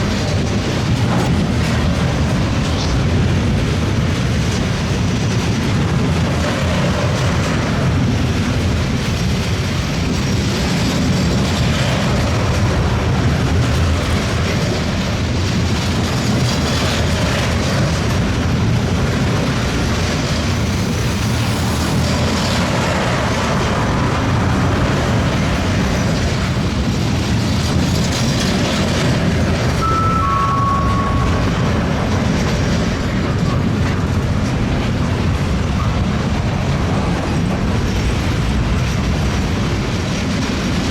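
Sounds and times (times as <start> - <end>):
freight train wagons rumbling: 0.0 - 40.9
train wheel squeals: 28.7 - 33.8.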